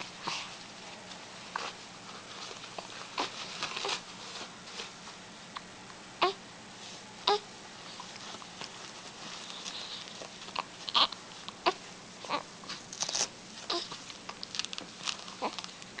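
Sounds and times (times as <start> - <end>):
soft rustling: 0.0 - 5.3, 7.8 - 16.0
baby hiccuping: 10.9 - 12.4.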